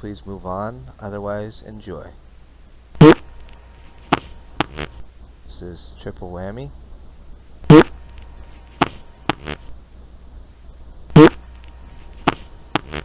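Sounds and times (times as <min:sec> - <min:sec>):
person farting: 0:03.0 - 0:03.2, 0:04.1 - 0:05.0, 0:07.7 - 0:08.0, 0:08.8 - 0:09.7, 0:11.1 - 0:11.4, 0:12.2 - 0:13.0.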